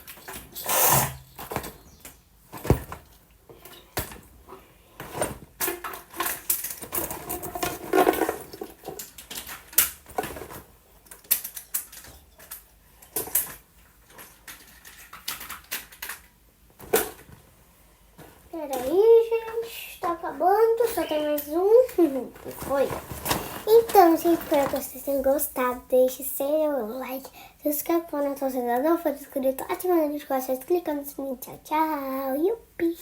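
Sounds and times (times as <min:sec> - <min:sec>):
plastic toys clicking and clattering: 0:05.0 - 0:17.3, 0:18.6 - 0:25.5
bag rustling: 0:22.0 - 0:25.4.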